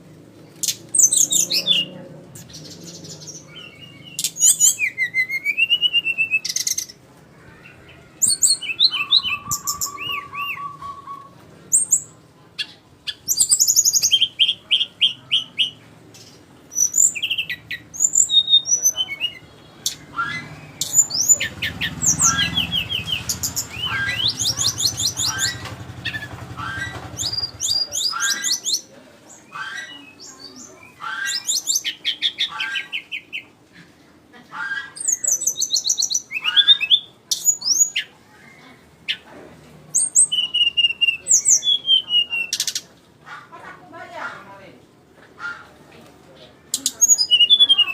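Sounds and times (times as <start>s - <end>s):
flycatcher singing chirps and trills: 0.6s - 5.5s, 16.7s - 25.6s.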